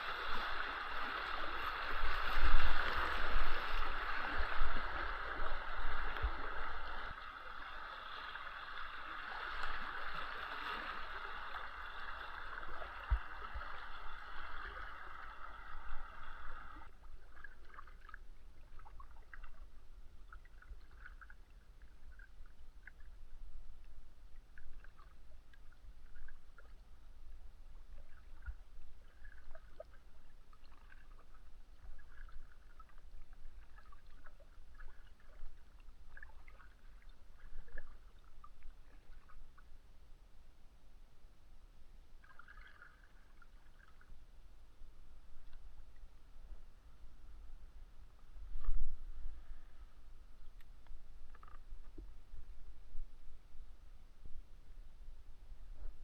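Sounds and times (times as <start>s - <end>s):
water rushing and gurgling: 0.0s - 21.5s.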